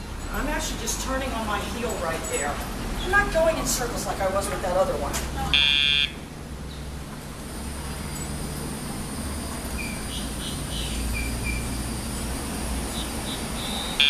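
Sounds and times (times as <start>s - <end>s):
high insect drone: 7.4s - 14.0s.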